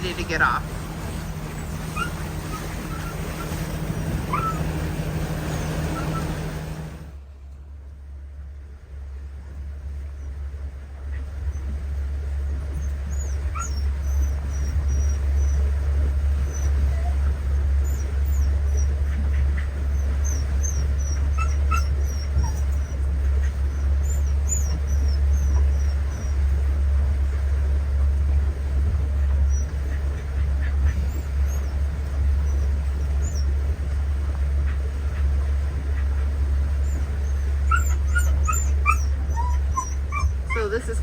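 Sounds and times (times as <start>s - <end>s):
boat engine drone: 0.0s - 41.0s
dog whimpering: 1.4s - 6.9s, 12.7s - 26.5s, 29.4s - 33.7s, 36.8s - 41.0s.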